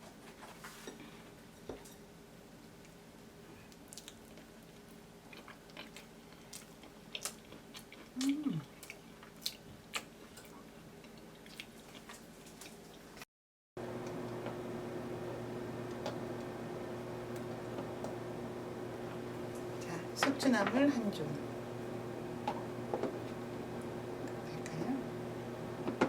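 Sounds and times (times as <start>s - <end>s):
steady hum: 13.8s - 26.0s.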